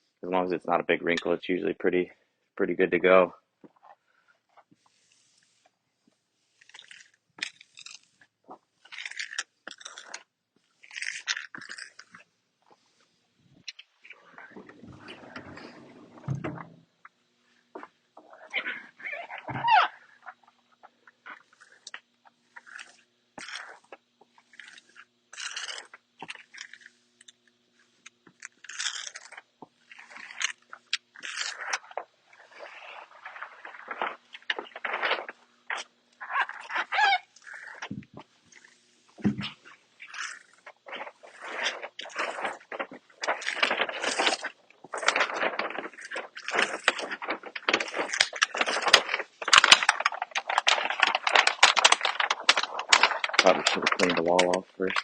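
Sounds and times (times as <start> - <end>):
squeegee scraping decal: 6.4 - 16.9, 27.8 - 55.0.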